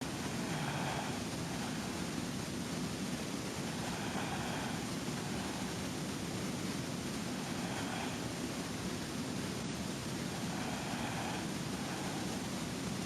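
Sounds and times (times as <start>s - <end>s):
steady hiss: 0.0s - 13.0s
woman snoring: 0.2s - 2.4s, 3.5s - 8.7s, 10.2s - 13.0s.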